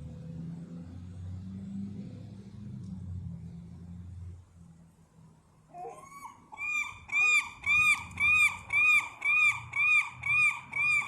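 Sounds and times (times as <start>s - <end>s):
gull yelping calls: 5.8s - 11.0s.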